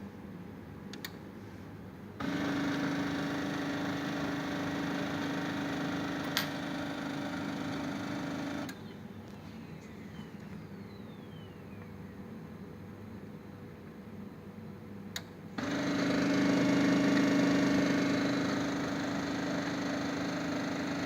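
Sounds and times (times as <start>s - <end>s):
printer mechanical hum: 2.2s - 9.2s, 15.6s - 21.0s.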